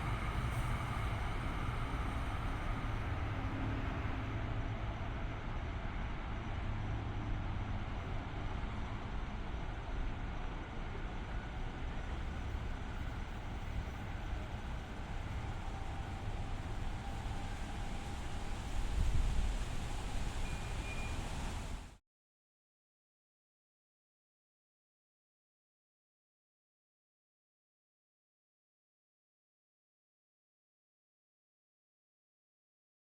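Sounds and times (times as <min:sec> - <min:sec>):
train rumbling past: 0:00.0 - 0:22.0.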